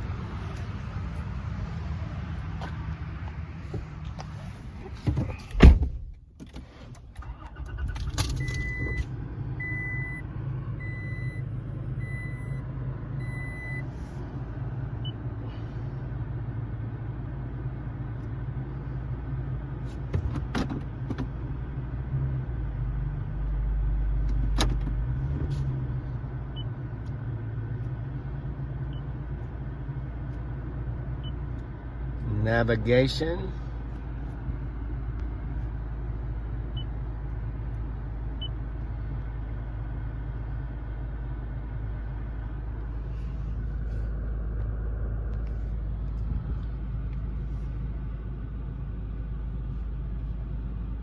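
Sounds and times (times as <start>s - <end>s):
truck engine starting and idling: 0.0s - 51.0s
loud thump: 5.0s - 6.2s.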